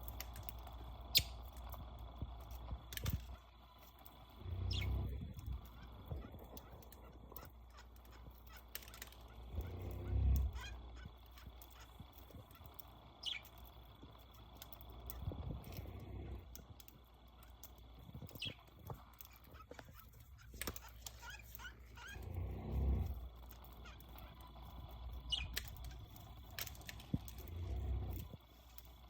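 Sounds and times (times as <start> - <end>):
low rumbles: 0.0 - 29.0
budgerigar chirping and warbling: 4.6 - 5.0, 9.3 - 11.9, 13.2 - 13.5, 25.3 - 25.6.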